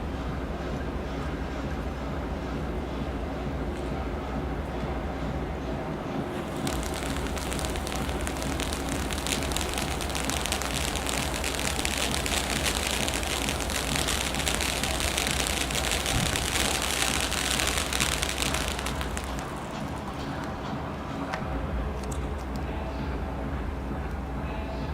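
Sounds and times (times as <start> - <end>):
firework fountain crackling hiss: 6.3 - 20.7.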